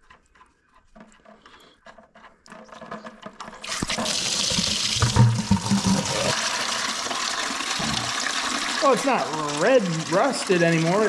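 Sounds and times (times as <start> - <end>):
liquid gushing from radiator: 3.6 - 11.0.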